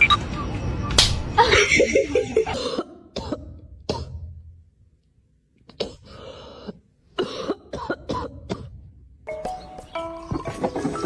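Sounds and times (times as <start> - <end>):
person coughing: 2.5 - 4.3, 5.7 - 8.9.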